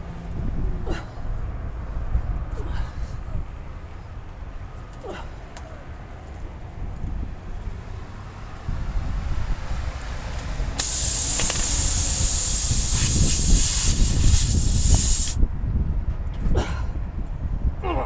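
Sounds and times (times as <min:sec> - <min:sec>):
pressurised air hissing: 0:10.8 - 0:15.4.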